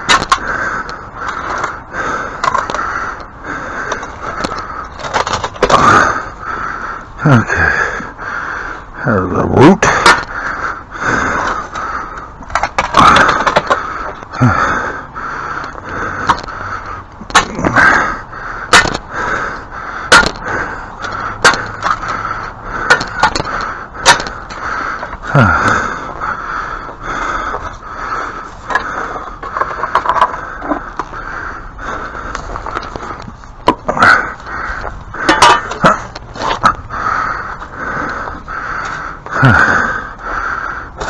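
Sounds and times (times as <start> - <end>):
scraping: 0.0 - 3.2, 27.5 - 39.7.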